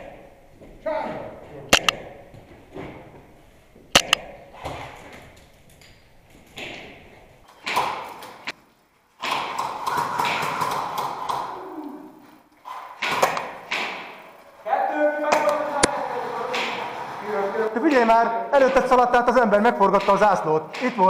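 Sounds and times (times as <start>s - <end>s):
airsoft rifle shot: 1.7s - 2.2s, 4.0s - 4.4s.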